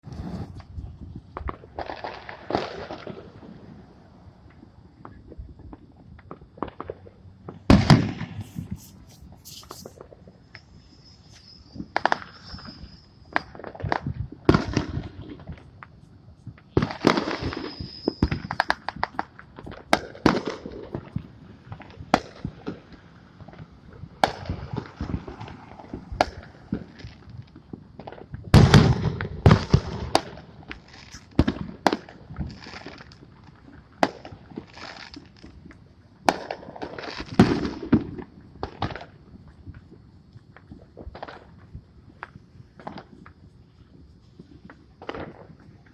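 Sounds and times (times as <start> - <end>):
firework whistles: 0.0 - 0.8, 7.7 - 15.4, 16.7 - 22.5, 28.6 - 33.2
fireworks bangs and pops: 0.0 - 45.9.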